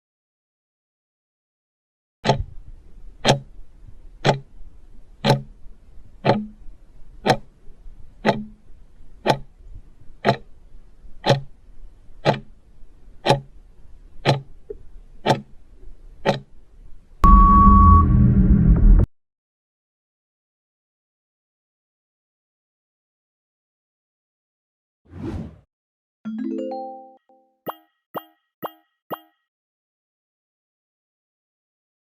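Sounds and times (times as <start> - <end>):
clock ticking: 2.2 - 3.6, 4.2 - 4.6, 5.2 - 5.6, 6.2 - 9.6, 10.2 - 10.6, 11.2 - 12.6, 13.2 - 13.6, 14.2 - 15.6, 16.2 - 16.6, 27.7 - 29.4.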